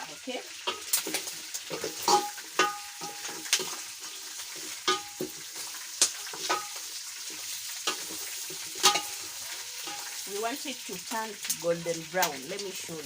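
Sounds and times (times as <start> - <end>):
chicken sizzling in fat: 0.0 - 13.0
utensil stirring: 0.6 - 10.4
metallic clinks against pot: 1.7 - 3.8, 4.8 - 5.4, 6.4 - 6.8, 8.8 - 10.2.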